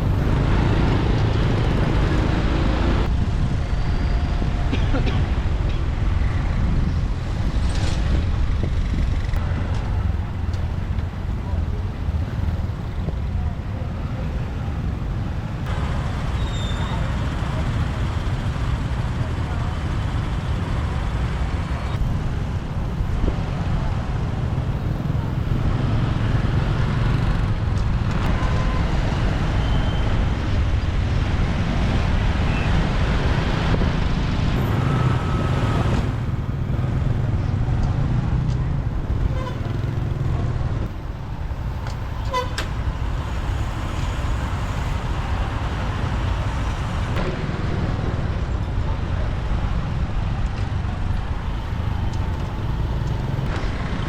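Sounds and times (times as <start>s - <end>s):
motorbike engine rumble: 0.0s - 28.7s, 33.8s - 54.0s
surrounding traffic: 0.0s - 54.0s
short horn toots: 42.2s - 42.8s.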